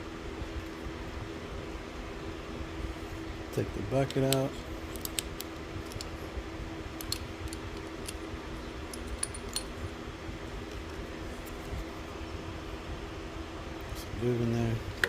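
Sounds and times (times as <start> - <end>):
steady low hum: 0.0 - 15.0
metal parts clinking: 8.9 - 9.8.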